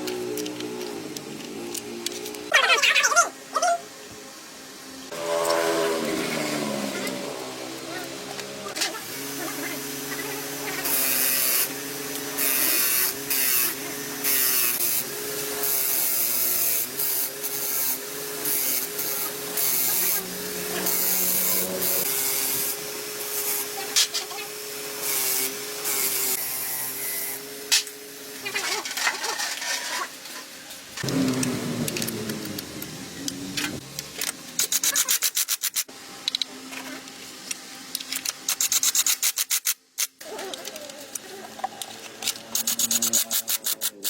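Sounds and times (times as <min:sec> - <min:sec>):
hissing spray bursts: 0:38.4 - 0:40.2.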